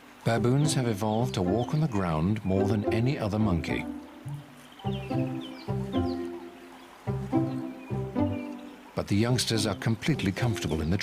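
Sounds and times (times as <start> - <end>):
sustained background music chords: 0.0 - 11.0
high falling chirps: 0.3 - 9.0.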